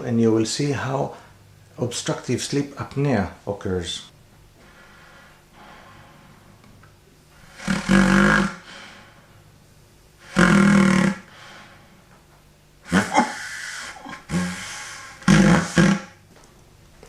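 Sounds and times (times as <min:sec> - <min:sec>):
quiet airflow: 0:00.0 - 0:17.0
snore-like buzzing balloon: 0:07.3 - 0:09.3, 0:10.2 - 0:11.9, 0:12.8 - 0:16.2
loud snorts: 0:07.4 - 0:09.2, 0:10.2 - 0:11.8, 0:12.8 - 0:16.2.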